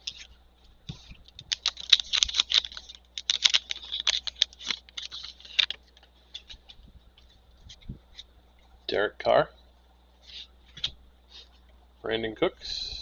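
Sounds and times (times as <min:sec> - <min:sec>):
cards ticking: 0:00.9 - 0:06.7
plastic wrapper crinkling and tearing: 0:01.0 - 0:06.8.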